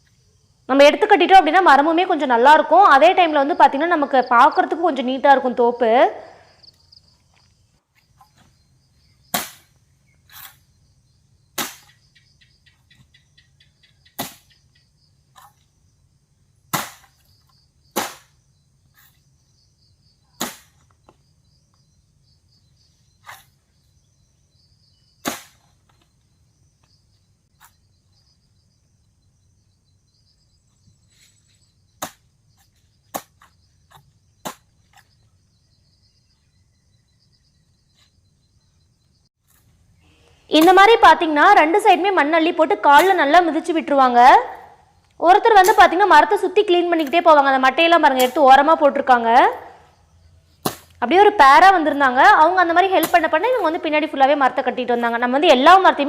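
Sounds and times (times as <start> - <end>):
hoe striking earth: 9.2 - 10.7, 11.5 - 12.0, 14.1 - 14.6, 16.7 - 19.2, 20.4 - 21.2, 23.2 - 23.6, 25.2 - 26.0, 31.1 - 35.3, 42.9 - 43.2, 48.2 - 48.6, 50.6 - 52.0, 52.9 - 53.8.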